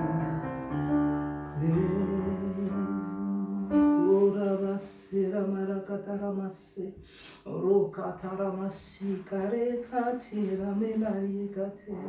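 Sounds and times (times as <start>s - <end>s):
slow worship music on keyboard: 0.0s - 7.7s.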